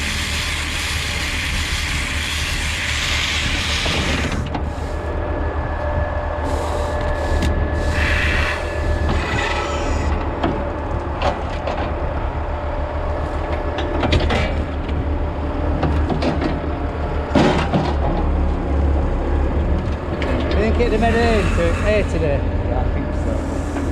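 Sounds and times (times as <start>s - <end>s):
machinery clanks and knocks: 9.0s - 12.4s, 13.4s - 18.8s, 19.5s - 23.9s.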